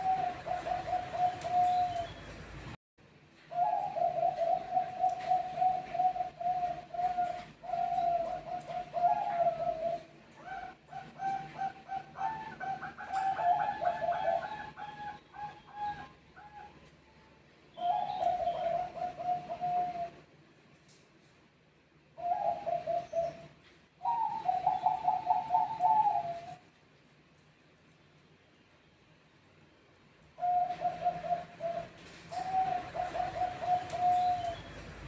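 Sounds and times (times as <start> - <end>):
doves cooing: 0.0 - 2.4, 3.5 - 16.9, 17.8 - 20.3, 22.2 - 26.7, 30.4 - 35.0.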